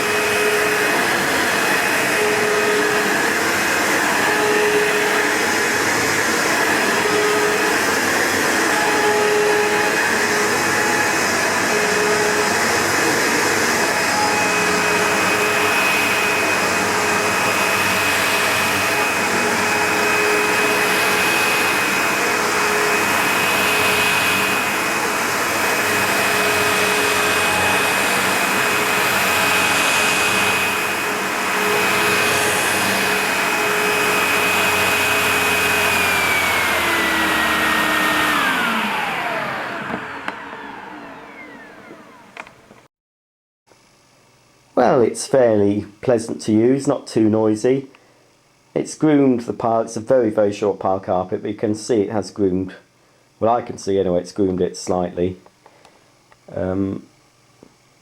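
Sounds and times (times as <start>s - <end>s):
carpet washer vacuum motor whining: 0.0s - 42.9s.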